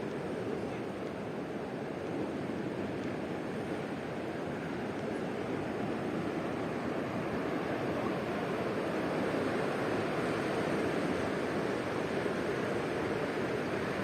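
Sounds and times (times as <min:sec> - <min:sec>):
steady rushing noise: 0:00.0 - 0:14.0.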